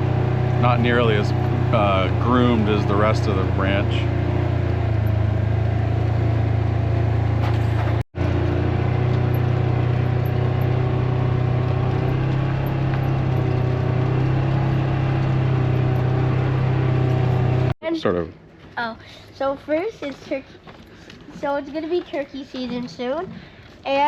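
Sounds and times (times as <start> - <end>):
vehicle engine droning: 0.0 - 17.8.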